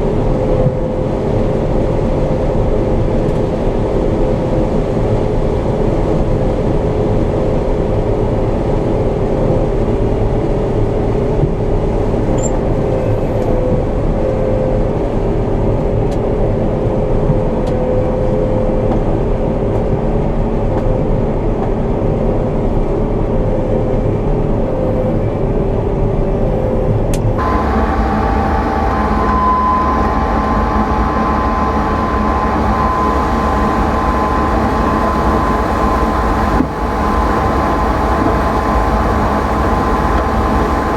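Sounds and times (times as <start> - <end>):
combine harvester drone and whine: 27.4 - 40.9.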